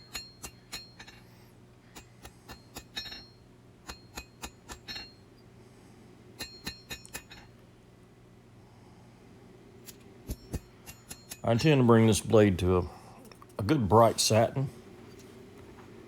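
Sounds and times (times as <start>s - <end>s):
hammer striking steel on anvil: 0.0s - 1.2s, 2.0s - 5.2s, 6.4s - 7.5s, 9.8s - 11.4s.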